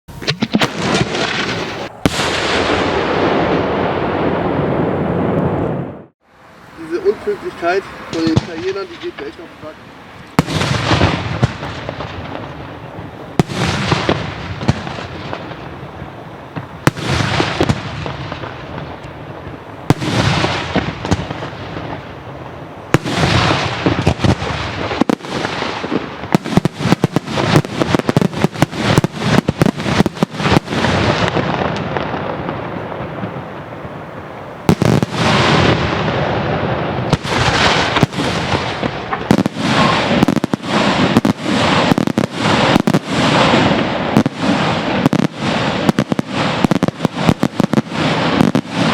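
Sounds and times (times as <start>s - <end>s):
fireworks bangs echoing: 0.1s - 6.1s, 6.8s - 48.9s
rapid fireworks reports: 0.1s - 48.9s.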